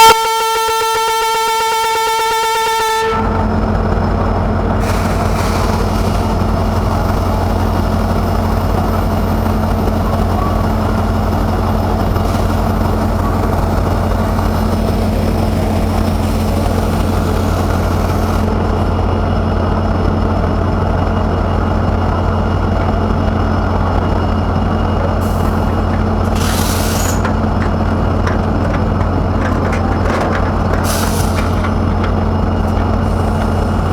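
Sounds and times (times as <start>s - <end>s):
locomotive horn: 0.0s - 3.6s
train running rumble: 0.0s - 33.9s.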